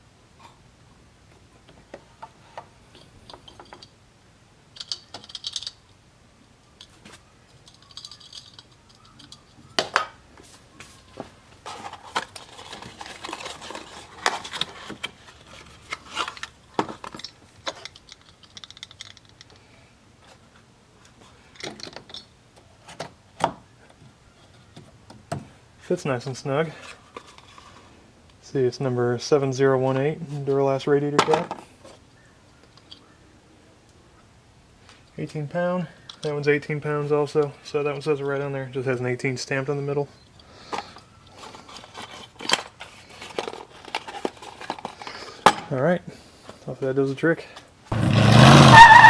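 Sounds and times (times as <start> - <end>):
radiator cap clicking and clinking: 4.7 - 6.0, 6.8 - 10.1, 16.3 - 19.7
rustling: 6.8 - 21.6, 40.0 - 45.5.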